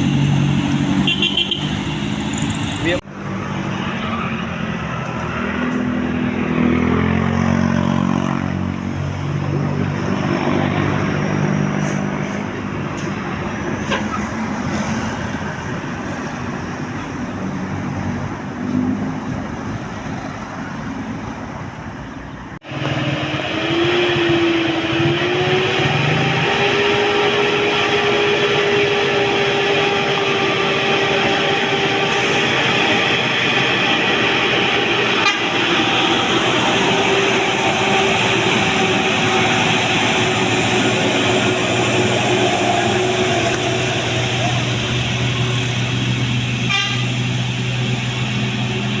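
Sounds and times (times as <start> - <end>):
street noise: 0.0 - 49.0
bus air horn tune: 1.0 - 2.0, 34.1 - 39.6, 46.6 - 47.4
rising horn tone: 22.7 - 45.9.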